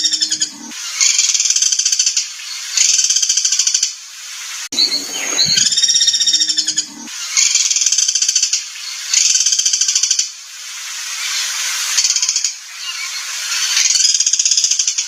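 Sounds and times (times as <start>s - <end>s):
harsh rattling bird trills: 0.0s - 1.7s, 4.8s - 8.3s
songbird sliding whistled notes: 4.8s - 6.9s.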